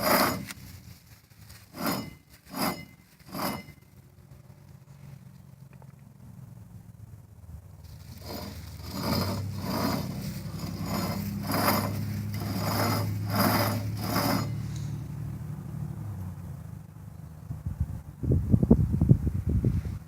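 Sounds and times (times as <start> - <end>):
wheel bearing grinding: 0.0 - 4.1, 7.8 - 15.3
steady low hum: 6.2 - 16.6.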